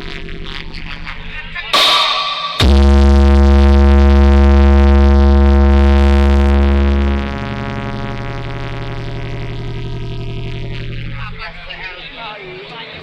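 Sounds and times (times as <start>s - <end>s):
held synthesizer bass note: 1.8s - 11.8s.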